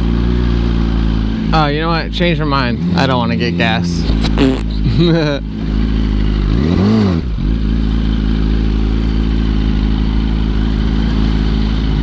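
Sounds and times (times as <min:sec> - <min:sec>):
motorcycle engine revving: 0:00.0 - 0:12.0.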